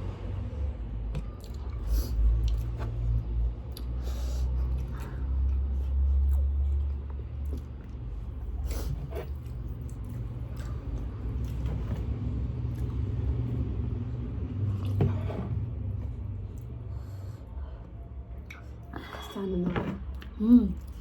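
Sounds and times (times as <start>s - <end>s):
chewing and biting: 1.2s - 13.8s.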